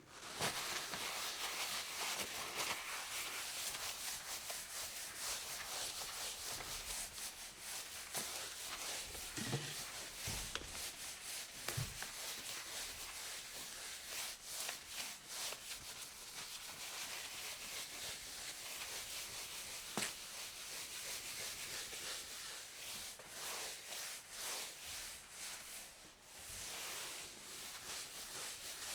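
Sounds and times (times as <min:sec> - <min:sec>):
cloth wiping a countertop: 0:00.1 - 0:28.9.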